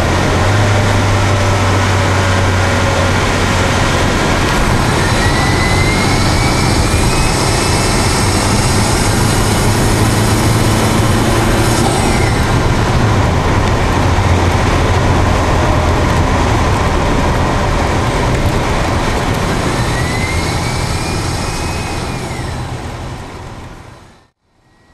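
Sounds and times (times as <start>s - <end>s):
engine intake rushing: 0.0s - 24.3s
thin whine climbing in pitch: 2.2s - 15.0s, 19.3s - 24.9s.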